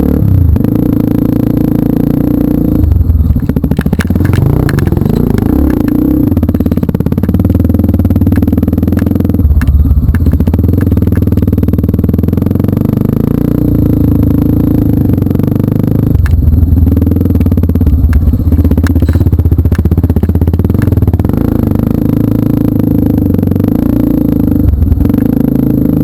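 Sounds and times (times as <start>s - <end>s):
motorcycle engine running: 0.0s - 26.0s
knocks and clatter: 3.1s - 11.8s, 16.1s - 21.8s.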